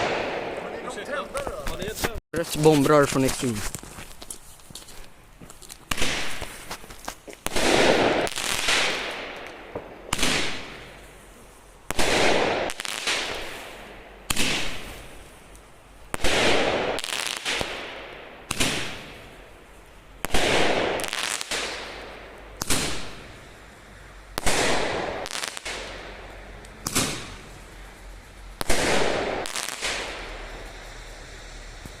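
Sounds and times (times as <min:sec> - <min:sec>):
firework shells bursting: 0:05.5 - 0:11.0, 0:11.9 - 0:15.3, 0:16.1 - 0:19.6, 0:20.2 - 0:23.5, 0:24.3 - 0:32.0.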